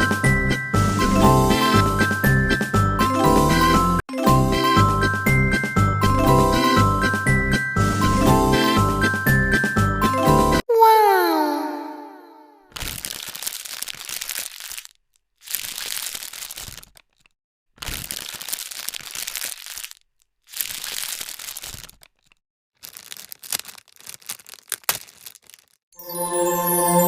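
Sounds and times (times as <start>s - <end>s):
packaging crackles and snaps: 12.7s - 25.8s
packaging crinkling and tearing: 12.7s - 25.8s.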